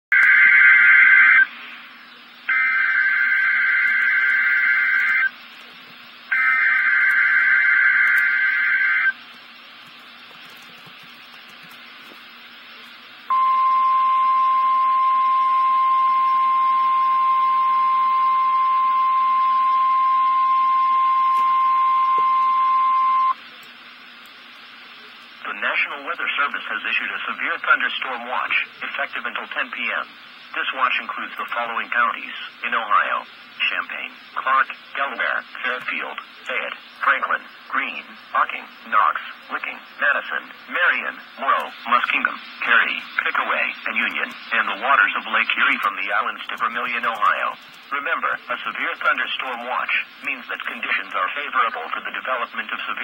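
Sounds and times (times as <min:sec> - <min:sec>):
faint steady hum: 0:00.1 - 0:53.0
radio hiss: 0:00.1 - 0:53.0
warbling digital data tones: 0:02.5 - 0:05.6.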